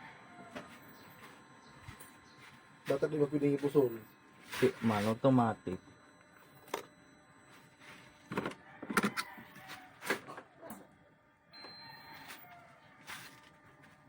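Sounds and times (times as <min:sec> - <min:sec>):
faint steady whine: 0:00.0 - 0:14.0.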